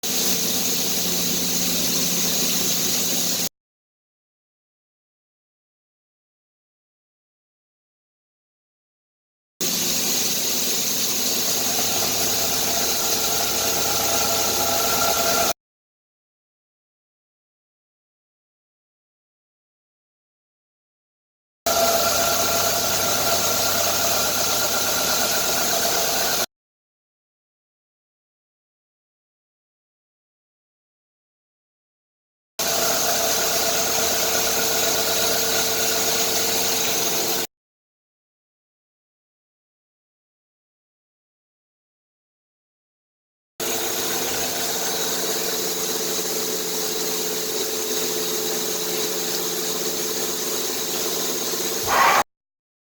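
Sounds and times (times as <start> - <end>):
milling machine cutting steel: 9.6 - 15.5, 21.7 - 26.5.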